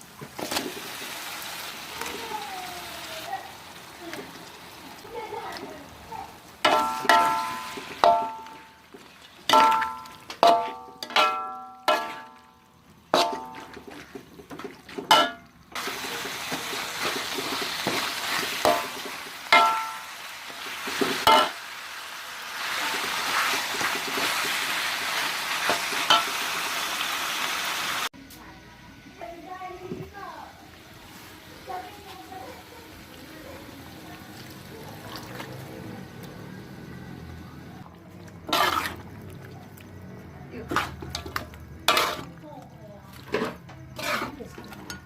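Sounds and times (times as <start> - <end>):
food sizzling: 0.0 - 28.2, 28.9 - 45.0
utensil clinking against pan: 6.6 - 8.7, 9.5 - 12.5, 13.2 - 13.9, 15.0 - 15.5, 18.6 - 20.1, 43.3 - 45.0
metal utensil striking a pan: 6.6 - 8.8, 9.5 - 13.9, 15.1 - 15.5, 18.6 - 20.2, 21.0 - 21.6, 25.7 - 26.4, 40.7 - 42.3, 43.3 - 45.0.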